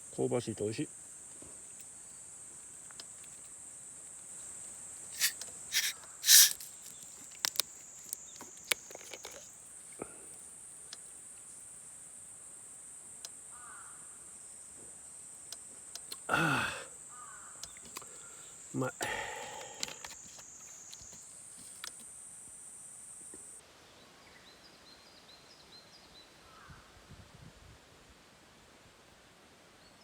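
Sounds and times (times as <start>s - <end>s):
insects chirring: 0.2s - 23.6s.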